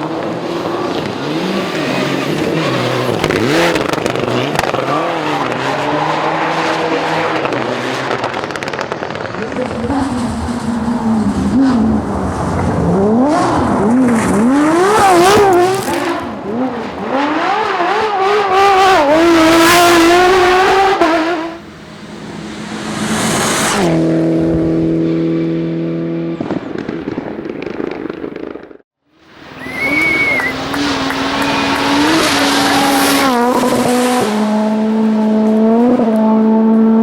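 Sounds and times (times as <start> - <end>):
rally car engine revving: 0.0 - 26.7, 29.5 - 37.0
tyre squeal: 29.5 - 33.2.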